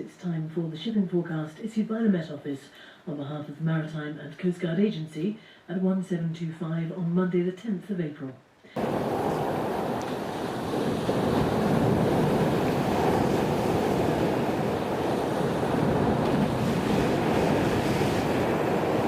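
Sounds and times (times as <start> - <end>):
gusting wind: 8.8 - 19.0
surf roaring: 8.8 - 19.0.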